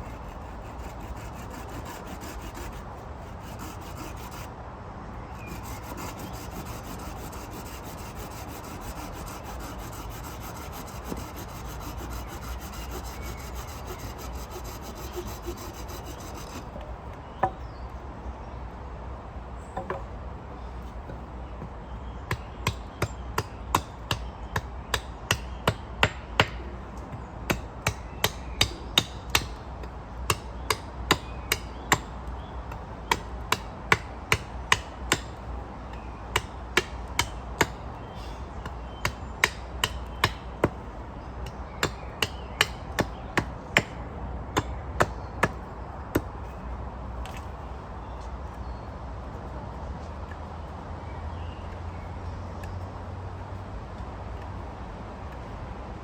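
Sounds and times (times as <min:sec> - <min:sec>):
hammer striking wooden stakes: 0:05.4 - 0:16.7, 0:22.3 - 0:26.7, 0:27.5 - 0:29.6, 0:30.3 - 0:32.1, 0:33.0 - 0:35.4, 0:36.3 - 0:37.8, 0:38.6 - 0:40.8, 0:41.5 - 0:44.0, 0:44.6 - 0:46.3.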